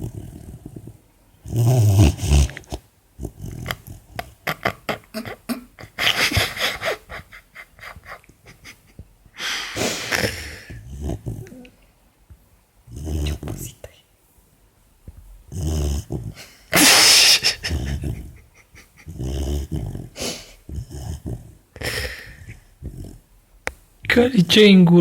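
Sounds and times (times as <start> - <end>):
puppy snoring: 0.0 - 5.4, 9.6 - 11.8, 12.9 - 13.8, 15.5 - 23.3.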